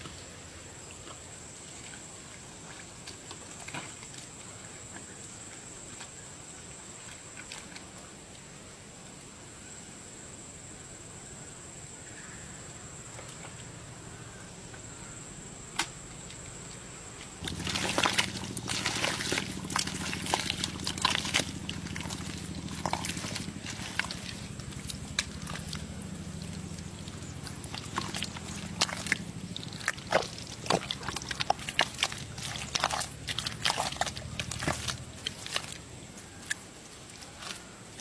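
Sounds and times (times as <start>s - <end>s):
water splashing and sloshing: 0.0s - 5.1s, 15.8s - 38.0s
low hum: 17.4s - 36.0s.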